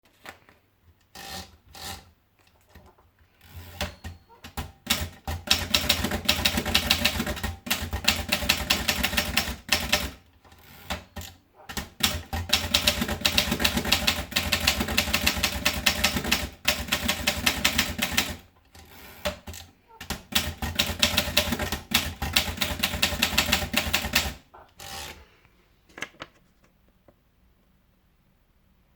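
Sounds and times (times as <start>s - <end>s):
typewriter typing: 3.5s - 10.2s, 10.8s - 25.2s.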